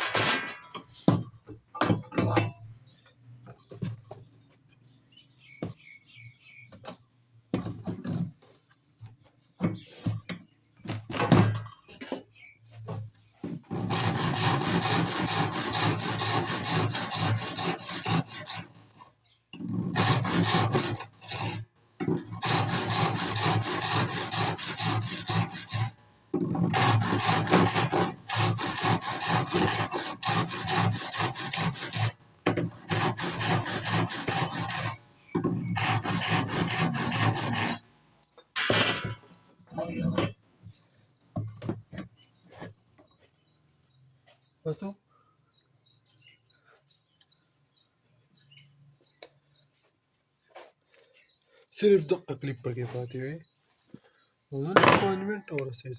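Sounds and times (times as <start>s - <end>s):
hand tool scraping wood: 9.6s - 37.9s, 38.5s - 43.6s.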